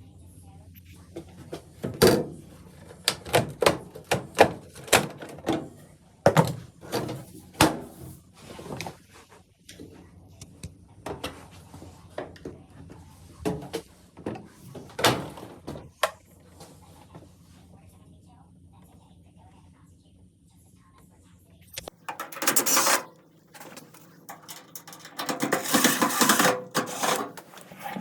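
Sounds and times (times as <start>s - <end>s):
metal panels knocking and clunking: 22.0s - 28.0s.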